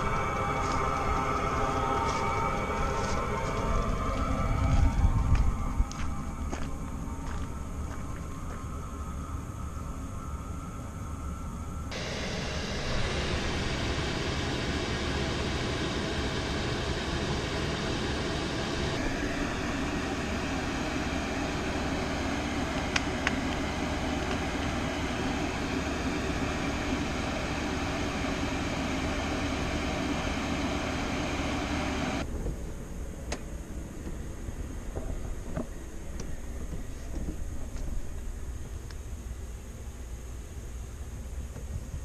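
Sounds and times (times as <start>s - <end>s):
air heater blower whoosh: 11.9s - 32.3s.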